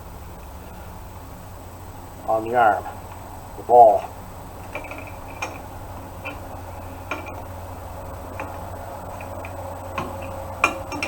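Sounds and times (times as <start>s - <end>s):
wrench clicking on bolt: 4.6s - 7.5s, 8.2s - 11.0s.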